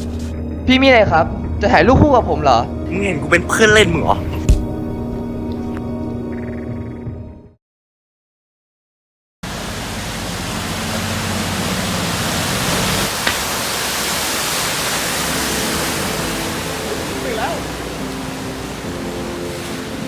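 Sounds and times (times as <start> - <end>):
loud steady rushing noise: 9.5 - 20.0.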